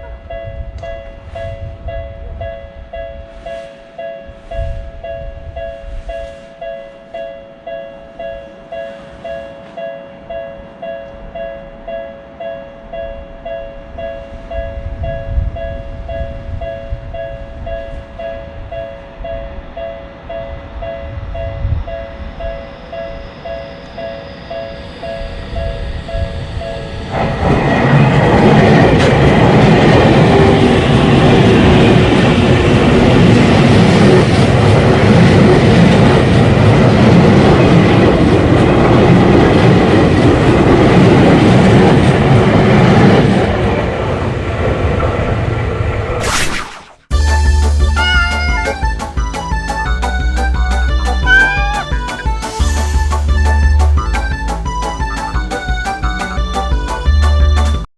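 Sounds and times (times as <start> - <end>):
crossing bell ringing: 0.0 - 28.2, 47.4 - 50.2
train passing with clattering wheels: 0.0 - 46.2, 47.3 - 57.8.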